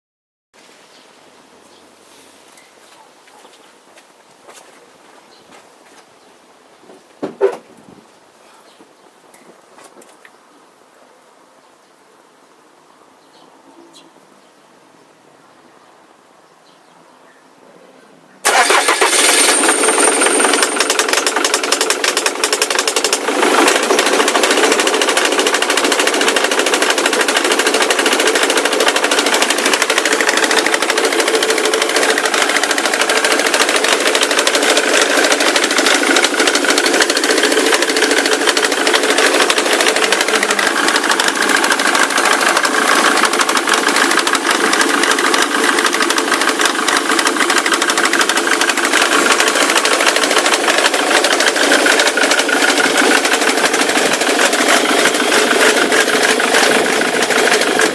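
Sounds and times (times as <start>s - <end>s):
diesel engine knocking: 18.5s - 57.9s.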